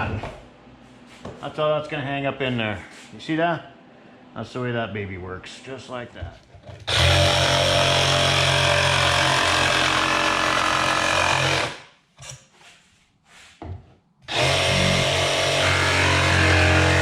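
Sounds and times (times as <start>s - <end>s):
power tool motor running: 6.8s - 11.8s, 14.3s - 17.0s.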